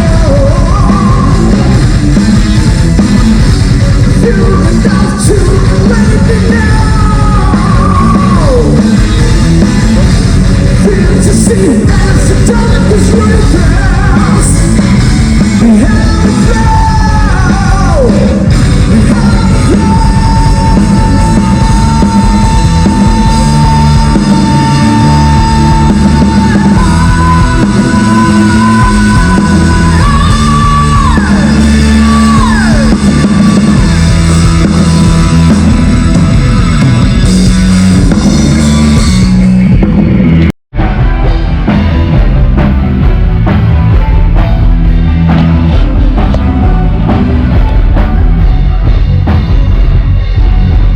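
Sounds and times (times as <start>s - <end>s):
person singing and yelling: 0.0s - 1.8s, 4.1s - 10.0s, 10.7s - 36.7s
loud rock music: 0.0s - 50.9s.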